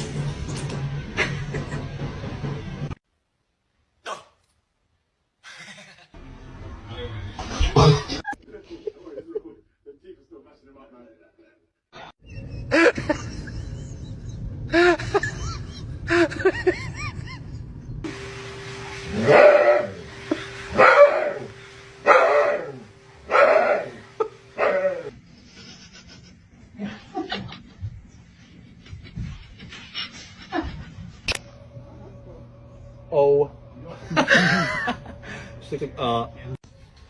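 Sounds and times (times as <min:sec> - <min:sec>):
dog barking: 0:19.2 - 0:20.0, 0:20.7 - 0:25.1.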